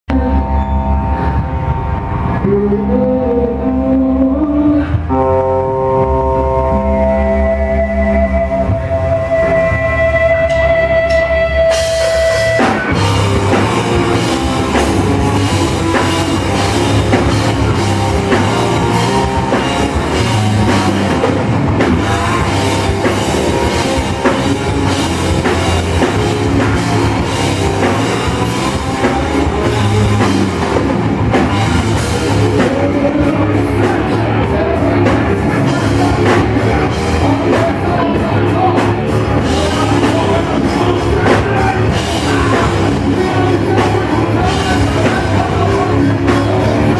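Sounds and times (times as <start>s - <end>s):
loud rock music: 0.0s - 46.9s
drum kit: 0.1s - 46.9s.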